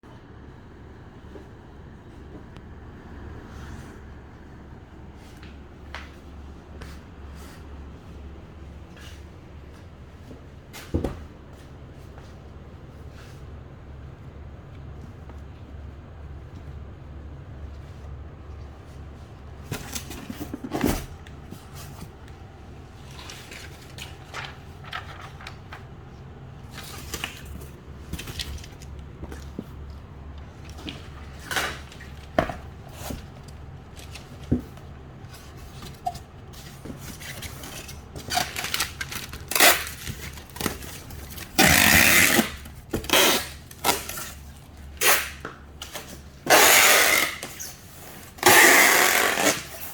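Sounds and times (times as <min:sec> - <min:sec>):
steady low hum: 0:00.0 - 0:49.9
clicks knocks and rustles of packing: 0:26.6 - 0:49.9.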